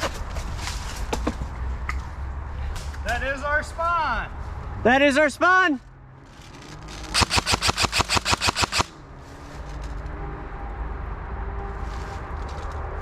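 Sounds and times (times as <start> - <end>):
toy gun rapid firing: 7.1 - 8.9.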